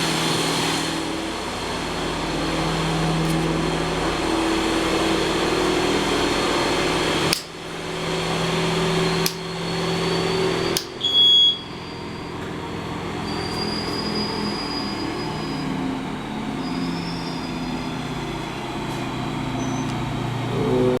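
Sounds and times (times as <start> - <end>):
aircraft engine running: 0.0 - 21.0
sharp clicks: 9.2 - 9.5
short high beep: 11.0 - 11.8.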